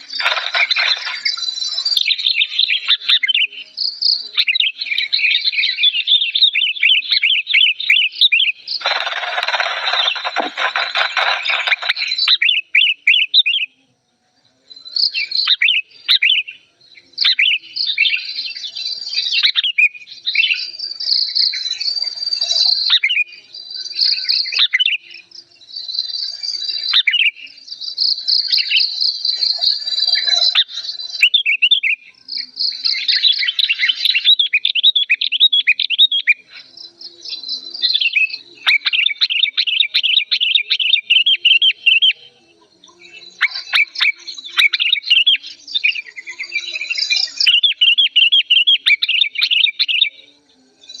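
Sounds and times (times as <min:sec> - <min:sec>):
bird chattering calls: 0:00.0 - 0:03.5, 0:06.5 - 0:13.6.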